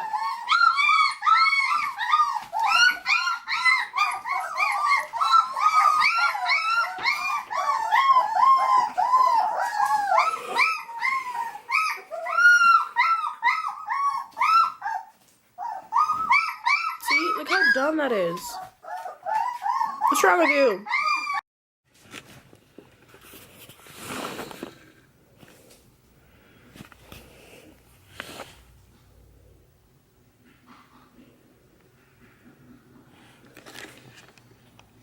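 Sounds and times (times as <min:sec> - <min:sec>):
puppies crying and whimpering: 0:00.0 - 0:21.4.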